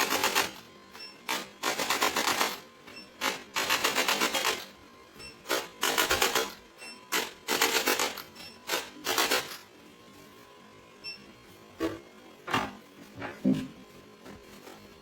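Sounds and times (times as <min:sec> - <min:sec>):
rapid mechanical buzz: 0:00.0 - 0:09.8.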